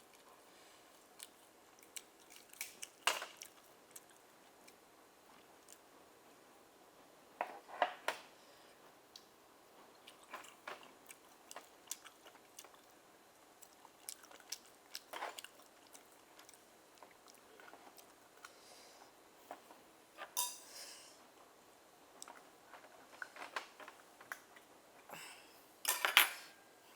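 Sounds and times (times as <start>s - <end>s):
chewing and wet mouth sounds: 0.9s - 5.9s, 9.9s - 18.7s.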